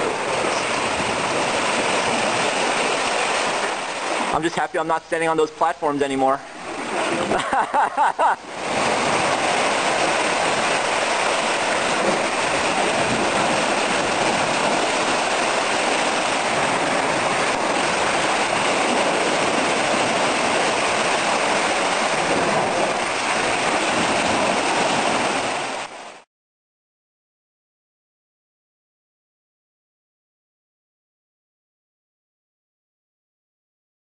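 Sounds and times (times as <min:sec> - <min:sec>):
water surging and sloshing: 0:00.0 - 0:26.3.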